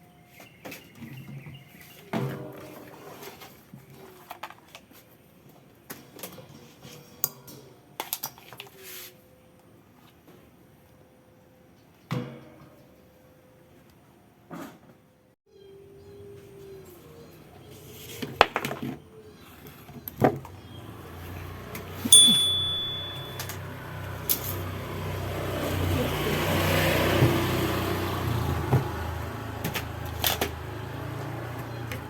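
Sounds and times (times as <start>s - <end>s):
short high beep: 22.2s - 23.5s.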